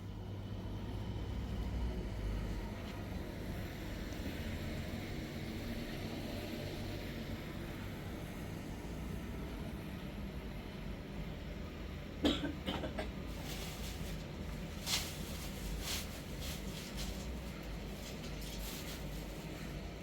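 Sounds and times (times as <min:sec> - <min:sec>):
person coughing: 0:12.2 - 0:13.2.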